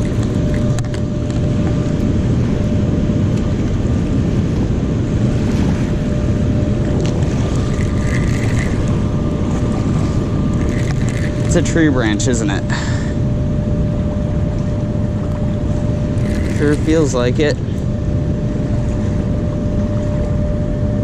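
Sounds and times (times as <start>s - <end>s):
faint steady hum: 0.0s - 21.0s
wind buffeting microphone: 0.0s - 21.0s.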